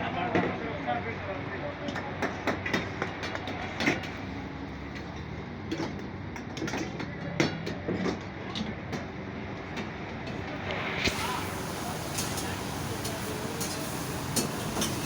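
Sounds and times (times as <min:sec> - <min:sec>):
low kitchen rumble: 0:11.1 - 0:15.0
utensils clanking: 0:11.1 - 0:15.0.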